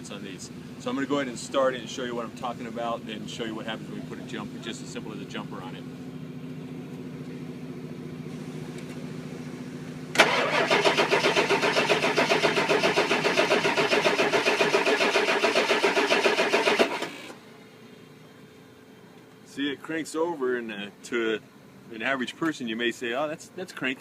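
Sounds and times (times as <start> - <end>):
low hum: 0.4 - 12.2
starter cranking diesel engine: 10.0 - 17.4.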